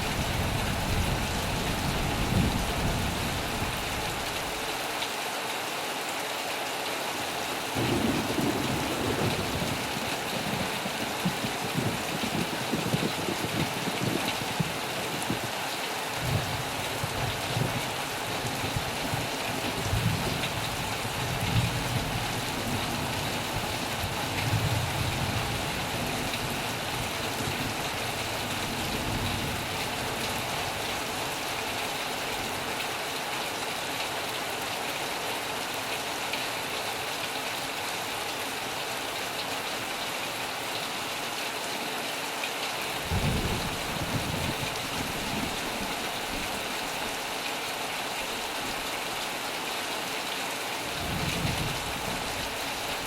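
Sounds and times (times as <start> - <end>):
thunder rumbles: 0.0 - 4.2, 7.8 - 15.5, 43.1 - 46.6, 51.0 - 53.0
heavy rain on a metal roof: 0.0 - 53.0.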